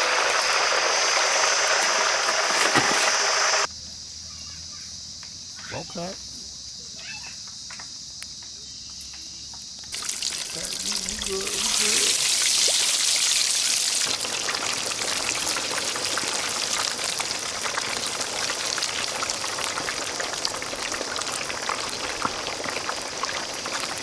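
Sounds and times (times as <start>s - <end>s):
chicken sizzling in hot oil: 0.0s - 3.7s, 9.9s - 24.0s.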